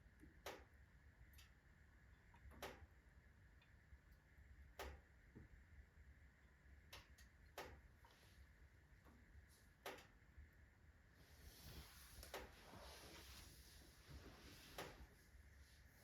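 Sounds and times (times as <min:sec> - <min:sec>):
sharp ticks of fire: 0:00.2 - 0:01.7, 0:02.4 - 0:03.0, 0:04.7 - 0:05.1.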